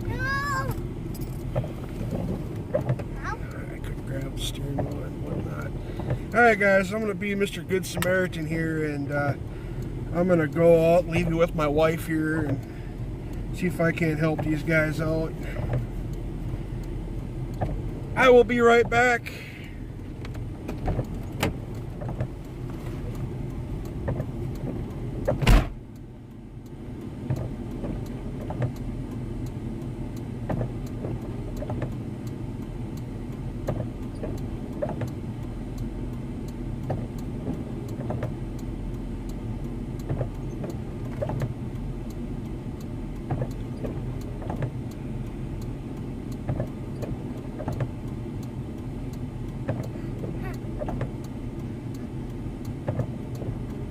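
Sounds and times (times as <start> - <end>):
vehicle idling hum: 0.0 - 53.9
faint ticks: 12.4 - 18.0, 19.9 - 53.8
car door slamming: 25.3 - 25.9.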